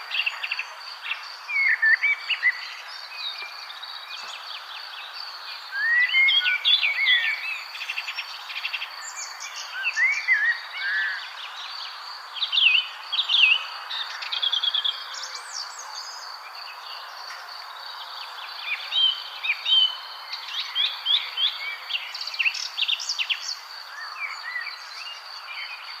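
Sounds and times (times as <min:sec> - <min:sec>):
songbirds chirping: 0:00.0 - 0:26.0.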